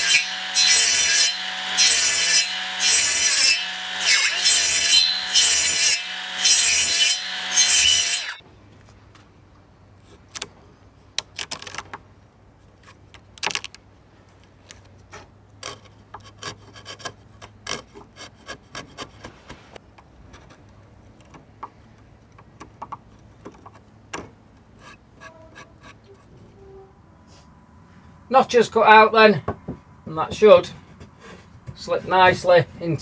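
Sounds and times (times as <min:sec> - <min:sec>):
wooden knocks and clicks: 0:20.0 - 0:24.7, 0:29.4 - 0:32.5.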